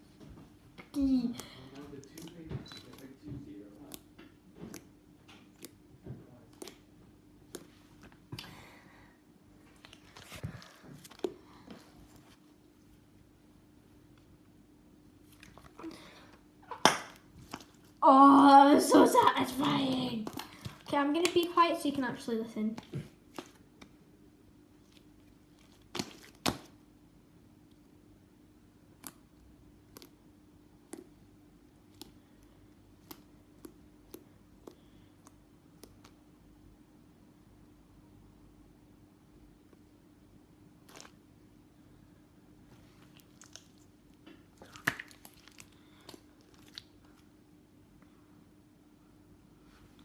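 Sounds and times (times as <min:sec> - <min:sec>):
faint steady hum: 0:00.0 - 0:50.0
sticky slime popping: 0:06.4 - 0:08.5, 0:24.9 - 0:26.8, 0:28.9 - 0:30.2, 0:32.9 - 0:36.2, 0:43.2 - 0:47.0
slime squishing and popping: 0:24.9 - 0:26.8, 0:43.1 - 0:47.0.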